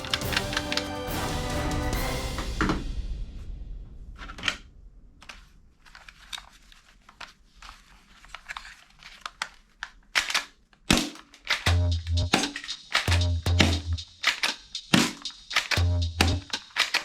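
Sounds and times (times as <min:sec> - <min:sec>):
small clicks and crinkling: 0:05.2 - 0:11.7, 0:16.5 - 0:17.0
sharp clacks: 0:10.9 - 0:17.0.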